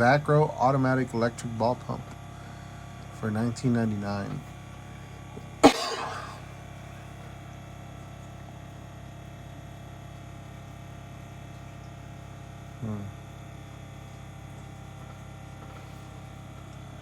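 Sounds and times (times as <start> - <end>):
electric pump motor humming: 0.0 - 17.0
short low voice sound: 12.8 - 13.2.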